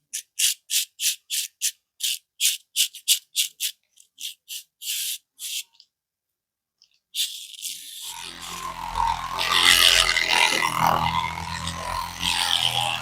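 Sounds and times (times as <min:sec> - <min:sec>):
low hum: 0:08.1 - 0:13.0.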